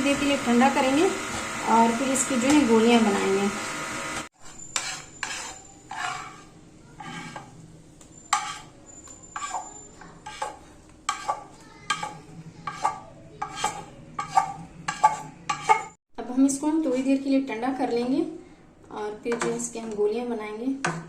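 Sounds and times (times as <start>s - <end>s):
metal spoon scraping a pan: 4.4s - 16.0s.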